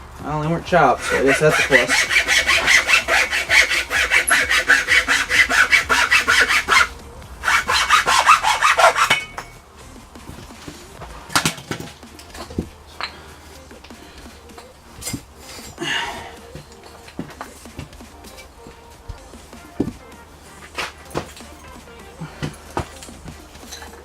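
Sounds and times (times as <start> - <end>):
saw cutting wood: 0.8 - 9.6, 14.2 - 24.0.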